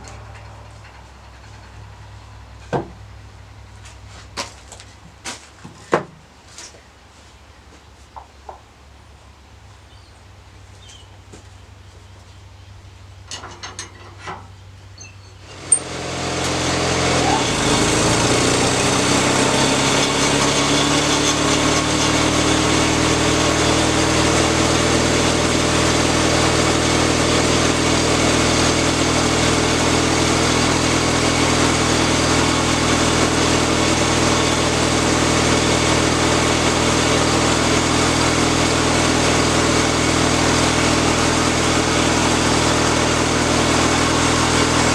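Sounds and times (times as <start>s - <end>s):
small petrol engine running: 15.5s - 44.9s.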